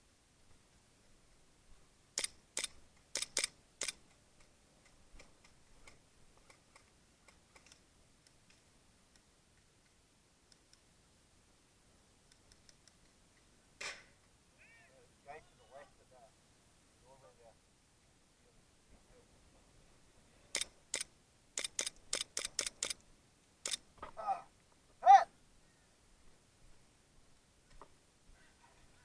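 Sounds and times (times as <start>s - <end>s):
sharp clicks or snaps: 2.2s - 10.8s, 12.3s - 13.1s, 20.5s - 23.0s, 23.6s - 23.8s.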